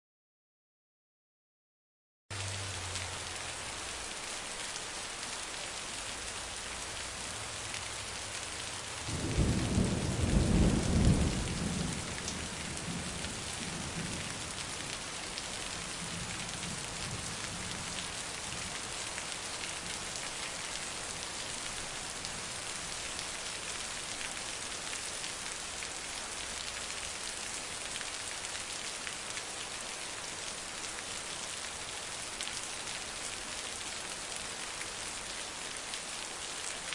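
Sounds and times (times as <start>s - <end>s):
heavy rain falling: 2.3s - 36.9s
thunder rumbling: 9.0s - 14.8s.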